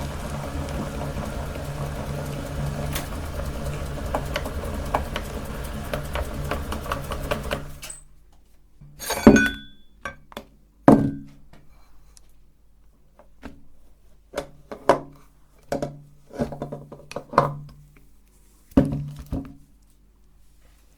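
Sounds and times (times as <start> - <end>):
electric meat grinder crushing: 0.0 - 8.0
metal parts knocking and clinking: 8.9 - 9.8.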